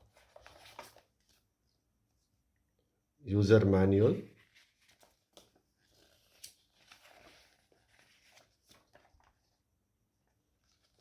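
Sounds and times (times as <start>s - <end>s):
soft rustle of handling: 0.0s - 2.6s, 4.1s - 11.0s.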